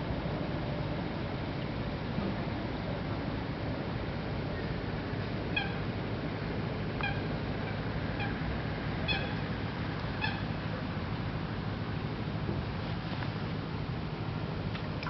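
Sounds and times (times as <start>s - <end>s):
low background noise: 0.0s - 15.0s
bird calls: 5.5s - 5.8s, 7.0s - 8.4s, 9.0s - 9.5s, 10.1s - 10.6s.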